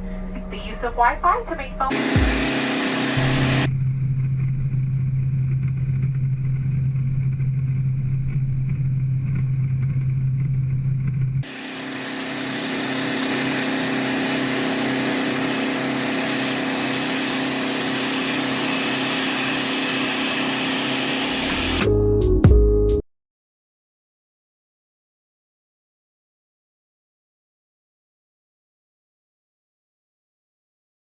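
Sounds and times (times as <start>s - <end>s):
airliner engine hum: 0.0s - 22.0s.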